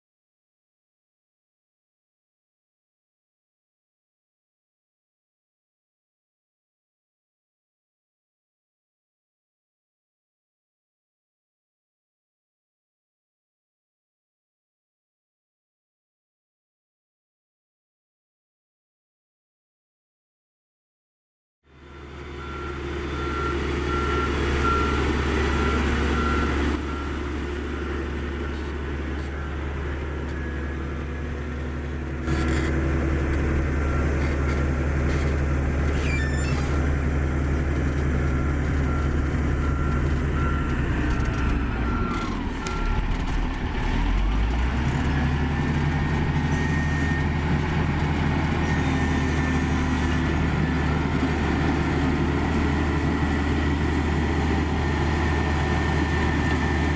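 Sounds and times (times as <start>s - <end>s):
diesel engine running: 21.7s - 56.9s
reversing alarm beeping: 21.8s - 56.9s.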